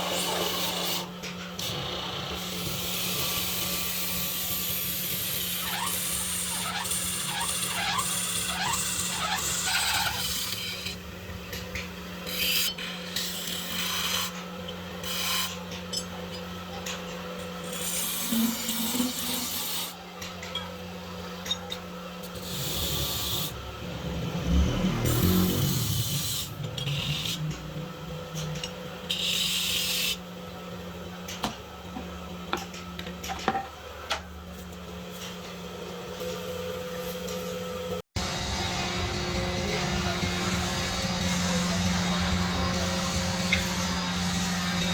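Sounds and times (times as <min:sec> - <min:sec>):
steady low hum: 0:38.2 - 0:44.9.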